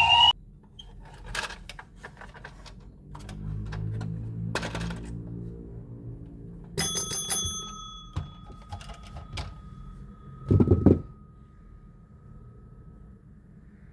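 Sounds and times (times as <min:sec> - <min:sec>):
bell-like metallic ring: 0:06.8 - 0:13.9.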